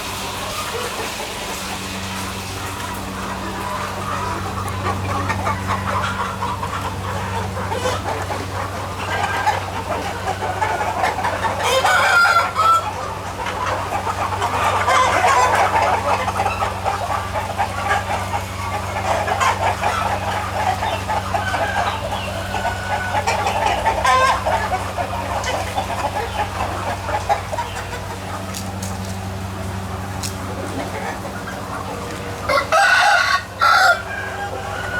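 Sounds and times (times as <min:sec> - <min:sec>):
chickens clucking: 0:00.0 - 0:34.9
rooster crowing: 0:32.4 - 0:34.9.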